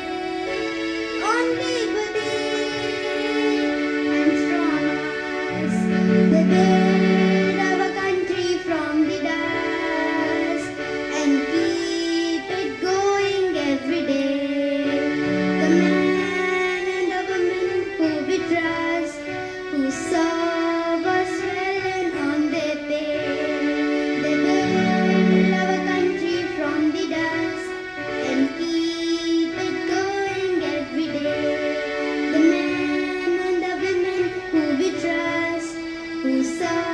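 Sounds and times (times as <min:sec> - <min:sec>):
instrumental backing: 0:00.0 - 0:36.9
high voices singing: 0:01.3 - 0:13.9, 0:24.2 - 0:28.7.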